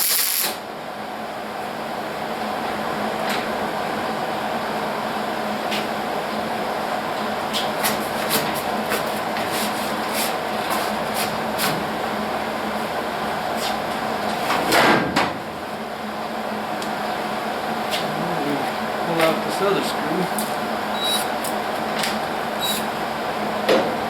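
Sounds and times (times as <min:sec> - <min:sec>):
sharp clicks and crackles: 0:00.0 - 0:00.6
steady mechanical hum: 0:00.0 - 0:24.0.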